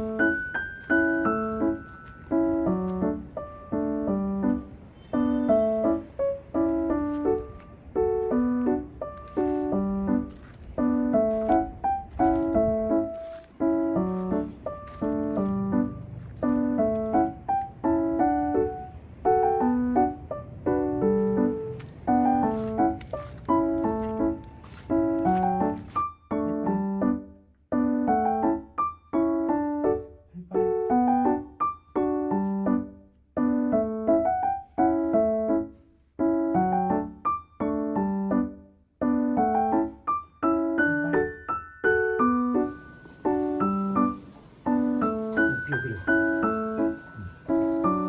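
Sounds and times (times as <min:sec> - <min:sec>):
piano music: 0:00.0 - 0:48.0
faint hiss: 0:42.4 - 0:48.0.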